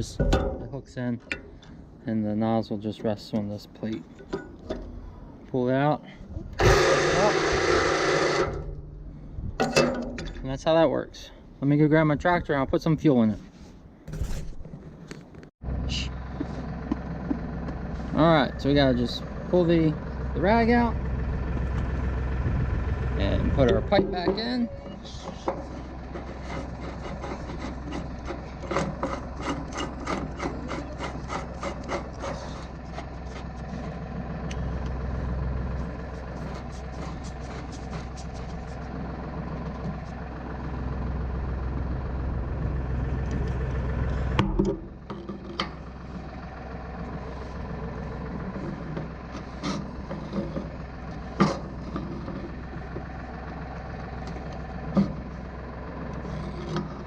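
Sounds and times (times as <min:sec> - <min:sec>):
metal clunks: 0:00.0 - 0:01.8, 0:03.8 - 0:05.2, 0:09.6 - 0:10.6, 0:23.6 - 0:32.2, 0:44.2 - 0:46.0, 0:48.4 - 0:53.1
metal clicking and rasping: 0:23.6 - 0:35.0, 0:35.9 - 0:39.0, 0:48.3 - 0:53.0, 0:56.1 - 0:57.0.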